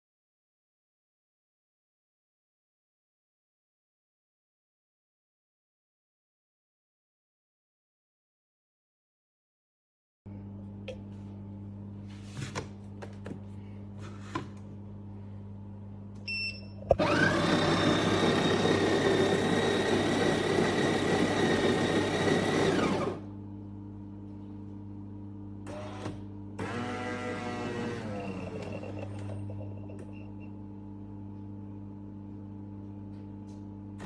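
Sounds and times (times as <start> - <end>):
low electrical hum: 10.3 - 17.0, 23.0 - 34.0
coffee grinder whirring: 16.9 - 23.3, 26.6 - 29.4.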